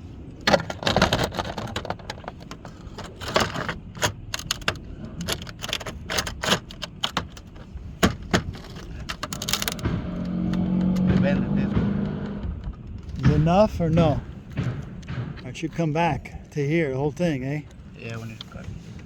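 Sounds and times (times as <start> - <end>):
metal roof panels clanking: 0.4 - 17.9.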